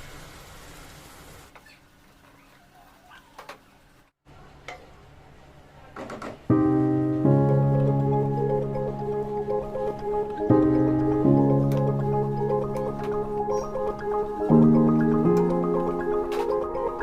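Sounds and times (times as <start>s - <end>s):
background piano music: 6.5s - 17.0s.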